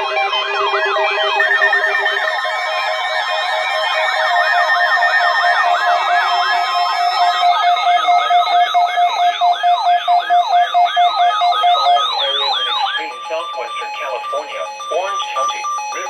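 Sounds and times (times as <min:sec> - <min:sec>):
steady pulsing beep: 0:00.0 - 0:16.0
sweeping siren-like alert tones: 0:00.0 - 0:16.0.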